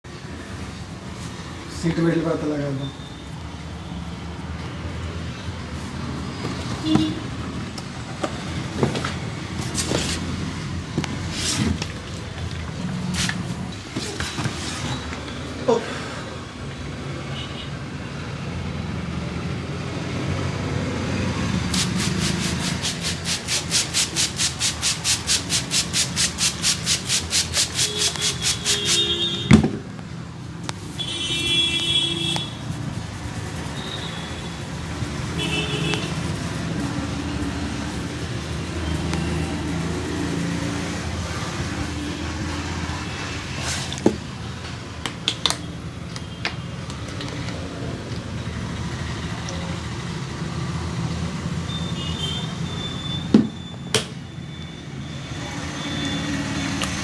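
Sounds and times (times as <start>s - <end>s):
street traffic: 0.0s - 57.0s
car horn toots: 27.8s - 29.6s, 31.0s - 32.6s, 35.4s - 36.2s.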